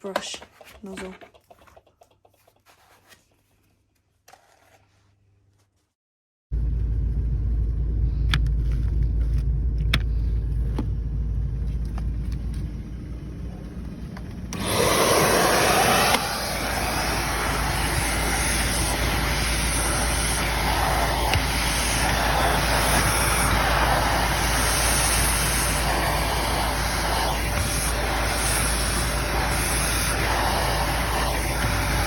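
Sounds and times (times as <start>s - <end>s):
steady low rumble: 6.5s - 32.0s
vacuum cleaner motor running: 13.6s - 32.0s.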